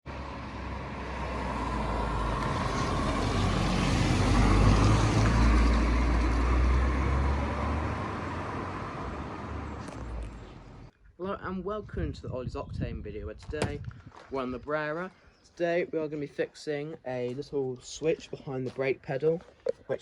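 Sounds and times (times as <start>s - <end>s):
car driving past: 0.1s - 10.9s.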